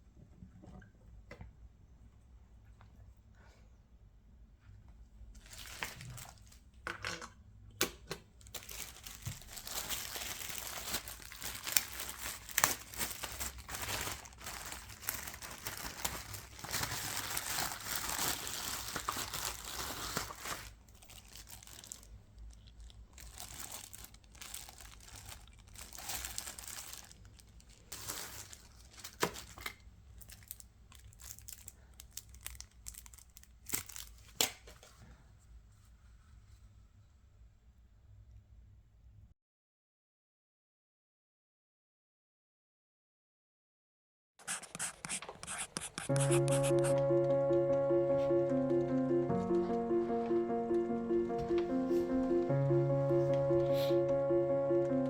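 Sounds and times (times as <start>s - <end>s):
packaging crinkling and tearing: 5.4s - 6.6s, 8.4s - 34.9s.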